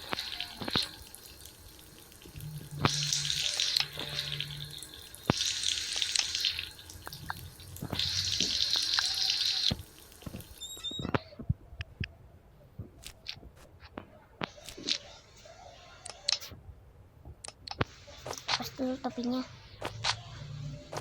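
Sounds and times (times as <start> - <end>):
water gushing into bath: 0.0 - 11.0.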